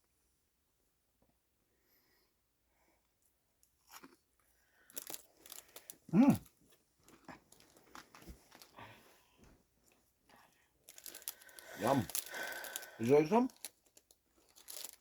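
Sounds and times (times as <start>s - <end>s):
crunchy snack chewing: 3.8s - 8.8s, 10.9s - 15.0s.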